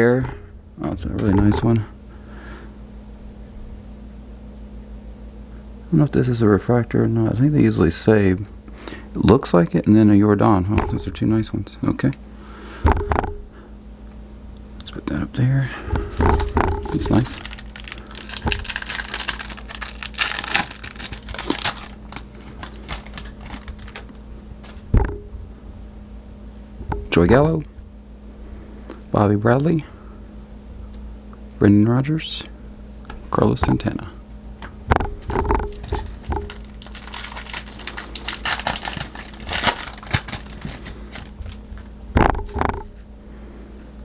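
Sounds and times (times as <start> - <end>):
foil wrapper crinkling: 16.0 - 24.9, 35.2 - 41.9.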